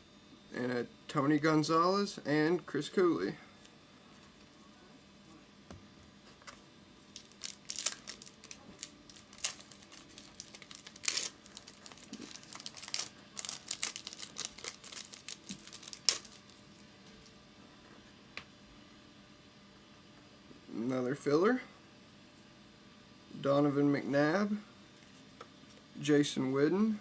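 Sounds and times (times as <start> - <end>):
wrapper crinkling and tearing: 7.1 - 16.9.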